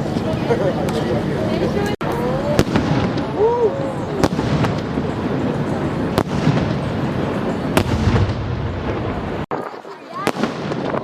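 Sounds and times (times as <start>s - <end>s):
fireworks crackling and rumbling: 0.0s - 11.0s
firework bangs: 2.4s - 11.0s.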